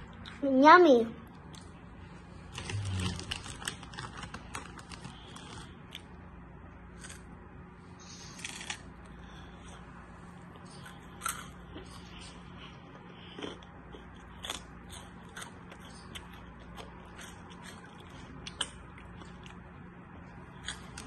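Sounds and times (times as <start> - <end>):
crisp eating crunches: 2.5 - 6.1, 8.0 - 9.8, 10.5 - 19.7.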